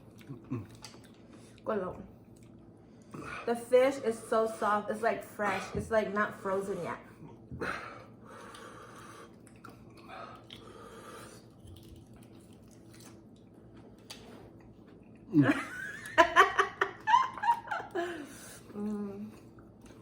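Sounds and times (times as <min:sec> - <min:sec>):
mouth and eating noises: 0:00.0 - 0:03.4, 0:08.4 - 0:15.5
person laughing loudly: 0:15.4 - 0:18.3.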